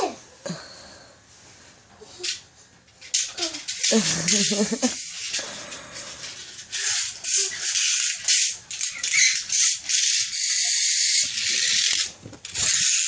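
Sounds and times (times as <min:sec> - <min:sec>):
toy car gears whirring: 0:03.0 - 0:13.0.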